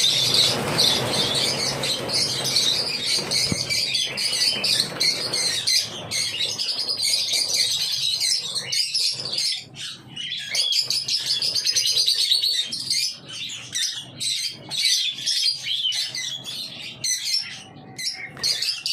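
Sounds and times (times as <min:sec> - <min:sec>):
flock of birds chirping: 0:00.0 - 0:18.9.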